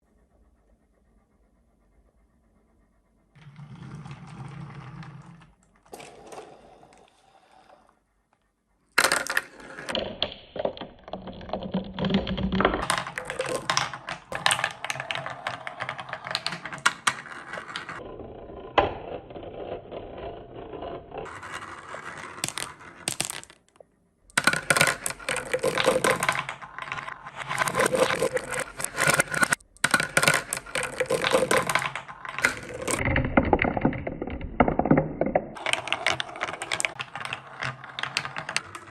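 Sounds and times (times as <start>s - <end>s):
marbles rattling down wooden run: 9.0s - 18.0s, 21.2s - 38.9s.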